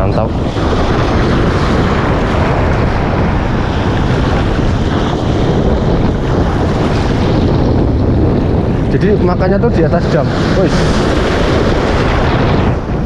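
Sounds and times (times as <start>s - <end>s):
heavy surf rushing: 0.0s - 13.0s
wind buffeting microphone: 0.0s - 13.0s.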